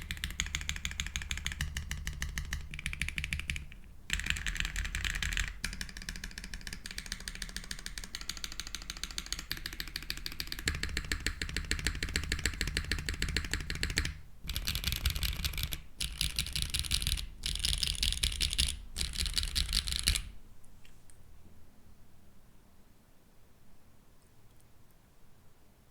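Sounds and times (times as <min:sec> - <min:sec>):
fast clacky keyboard typing: 0:00.0 - 0:20.3.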